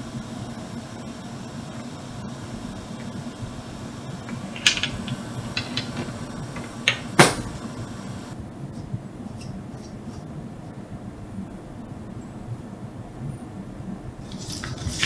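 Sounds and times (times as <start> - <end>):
steady low hum: 0.0 - 15.0
sharp clicks and knocks: 4.3 - 7.6.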